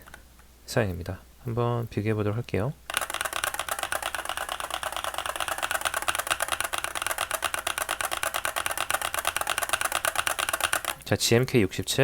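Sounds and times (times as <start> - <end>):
mechanical keyboard typing: 2.9 - 11.0.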